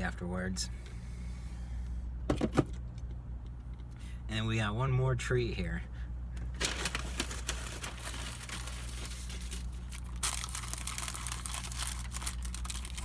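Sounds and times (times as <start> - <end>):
steady low hum: 0.0 - 13.0
paper wrapper crinkling: 6.5 - 13.0.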